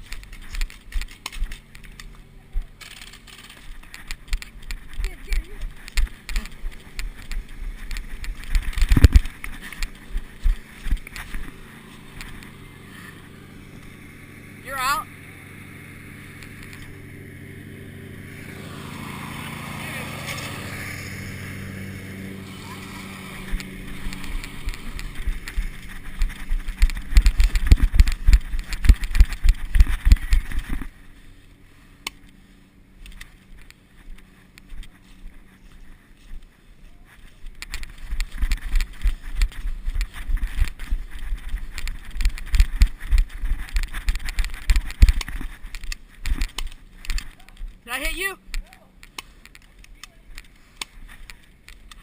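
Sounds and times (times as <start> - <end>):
camera handling thumps and rustling: 0.0 - 2.1, 2.8 - 12.5, 37.4 - 47.8.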